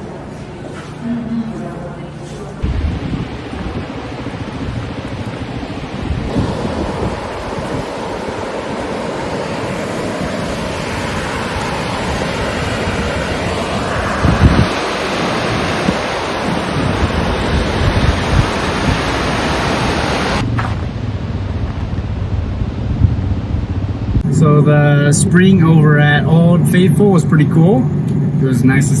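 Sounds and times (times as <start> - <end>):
geyser rushing hiss: 2.6 - 20.4
wind buffeting microphone: 2.6 - 29.0.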